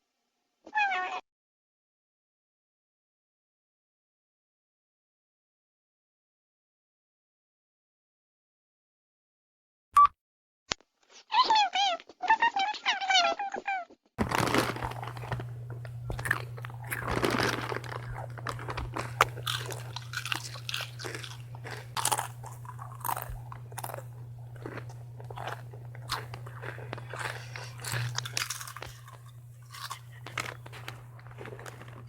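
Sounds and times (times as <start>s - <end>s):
potato chips crunching: 14.2s - 32.0s
steady low hum: 14.2s - 32.0s.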